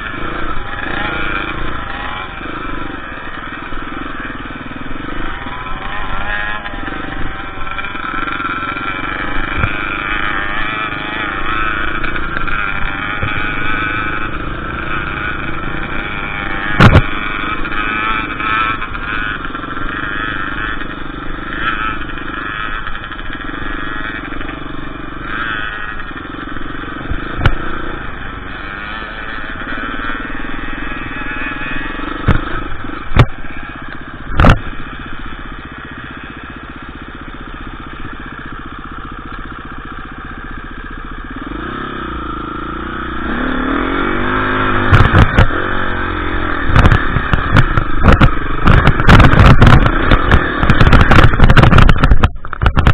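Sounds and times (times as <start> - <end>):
dirt bike engine revving: 0.0 - 52.9
sharp knocks: 16.8 - 17.2, 34.3 - 34.6.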